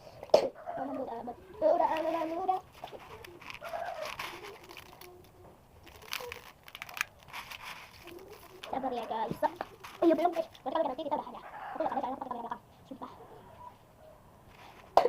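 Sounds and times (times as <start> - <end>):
sharp clicks and crinkles: 1.9 - 10.8.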